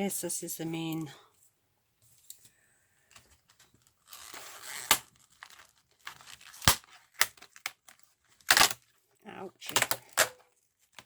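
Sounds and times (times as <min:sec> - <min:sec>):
packaging tearing and crinkling: 0:04.0 - 0:08.9.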